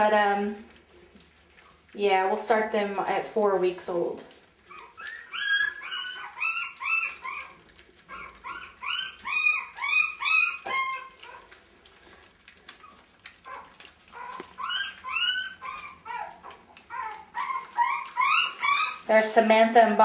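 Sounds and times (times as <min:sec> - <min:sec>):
puppies yelping whines: 0:04.4 - 0:19.1.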